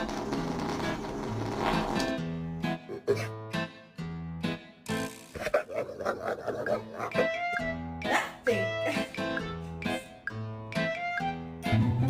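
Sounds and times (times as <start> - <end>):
light plucked melody: 7.1 - 12.0.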